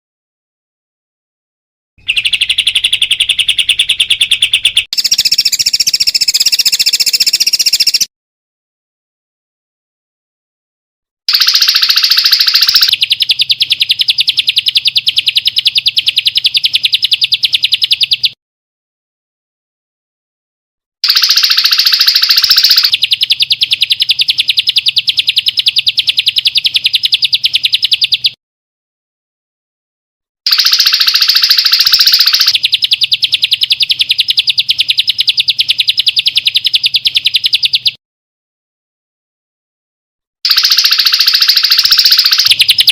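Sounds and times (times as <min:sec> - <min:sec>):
songbird trilling: 0:02.0 - 0:08.1, 0:11.4 - 0:18.4, 0:21.1 - 0:28.4, 0:30.5 - 0:38.0, 0:40.6 - 0:42.9.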